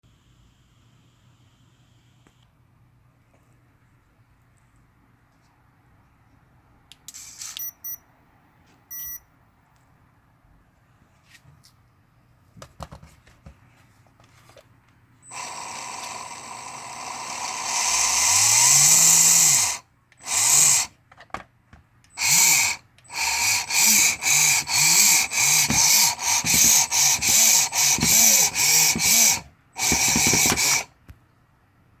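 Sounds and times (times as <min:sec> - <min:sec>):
electric motor whining: 0:15.3 - 0:20.9, 0:22.2 - 0:30.9.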